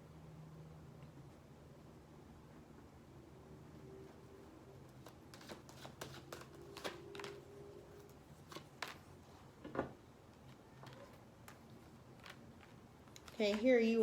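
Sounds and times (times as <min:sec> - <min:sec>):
faint steady hum: 0:00.0 - 0:14.0
cards being shuffled: 0:05.0 - 0:09.2, 0:10.4 - 0:13.8.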